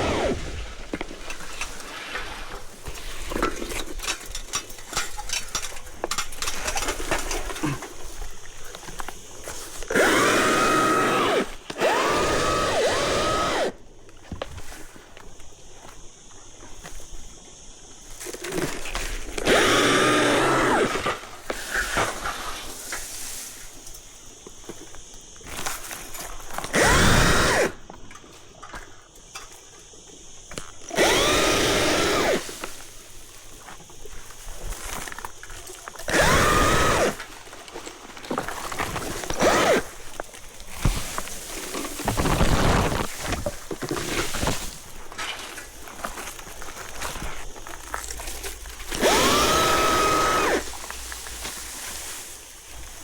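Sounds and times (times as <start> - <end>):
battery chainsaw cutting branches: 0.0 - 4.0, 9.7 - 13.8, 18.4 - 22.8, 26.5 - 27.8, 30.8 - 33.4, 36.0 - 37.6, 38.4 - 45.8, 48.8 - 52.5.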